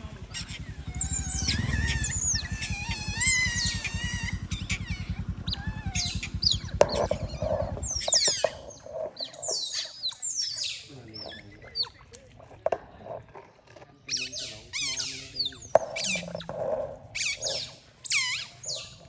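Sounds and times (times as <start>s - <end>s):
low rapid pulsing: 0.0s - 9.8s, 15.4s - 18.0s
otters chirping and squeaking: 0.0s - 19.0s.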